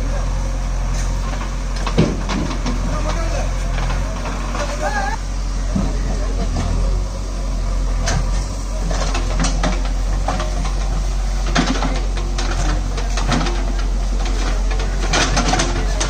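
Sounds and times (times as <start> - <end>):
heavy diesel engine running: 0.0 - 16.0
knocks and clanks: 1.2 - 4.8, 8.0 - 16.0.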